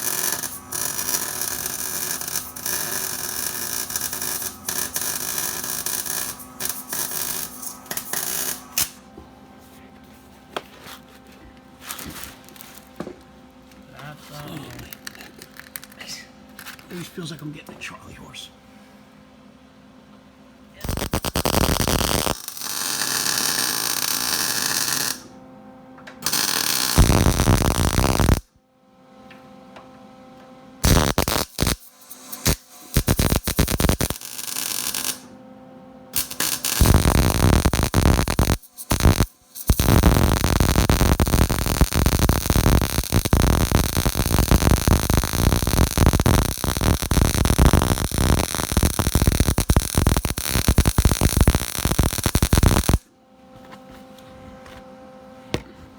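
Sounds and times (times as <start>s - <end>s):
welder arc crackling: 0.0s - 9.0s, 20.8s - 25.3s, 26.2s - 28.5s, 30.8s - 35.3s, 36.2s - 53.0s.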